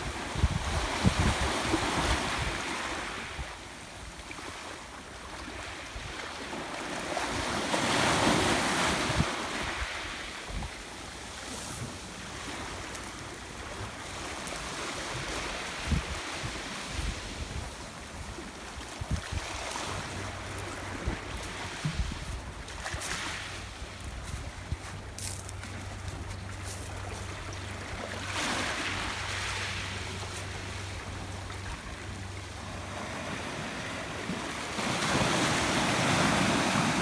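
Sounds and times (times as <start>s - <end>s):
wind buffeting microphone: 0.0s - 2.7s, 15.1s - 23.1s
sea waves washing in: 0.0s - 37.0s.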